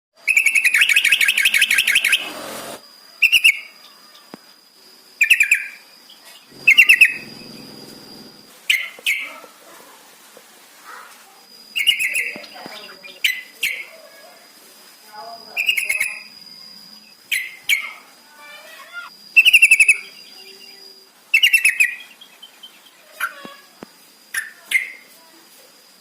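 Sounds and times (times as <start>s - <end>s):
bird trilling and chattering: 6.5s - 8.4s
faint steady high tone: 6.5s - 8.5s, 17.9s - 21.2s.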